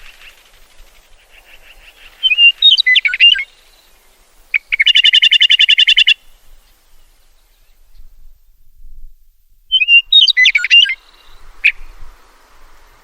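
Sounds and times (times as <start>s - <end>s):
rapid bird chatter: 0.0s - 7.3s
meadowlark whistled song: 0.0s - 9.0s, 9.6s - 13.0s.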